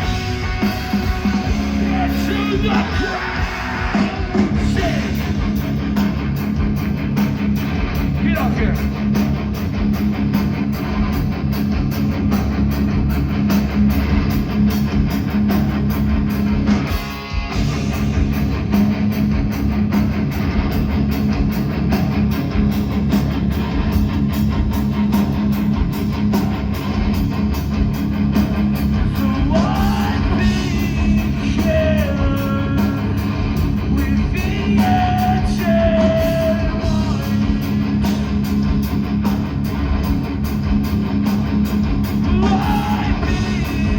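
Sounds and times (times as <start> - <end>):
metalcore band playing loud: 0.0 - 43.9
sung and yelled vocals: 1.4 - 5.6, 29.0 - 38.0, 42.2 - 43.9.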